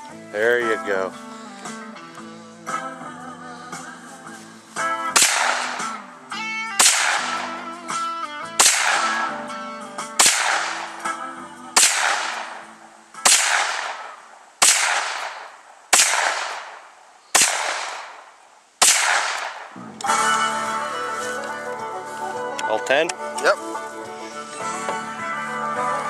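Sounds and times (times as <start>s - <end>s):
background music: 0.0s - 15.4s, 18.8s - 26.0s
carbine gunshots: 5.1s - 6.1s, 6.8s - 7.6s, 8.6s - 9.4s, 10.2s - 11.1s, 11.8s - 19.8s.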